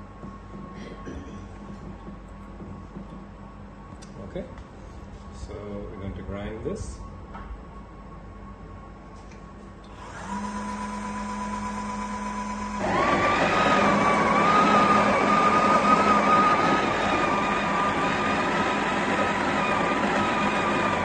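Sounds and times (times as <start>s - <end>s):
coffee grinder grinding beans: 10.2s - 21.0s.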